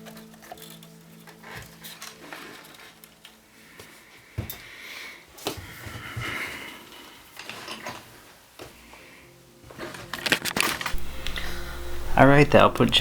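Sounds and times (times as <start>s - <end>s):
scraping and rustling: 0.0s - 4.1s.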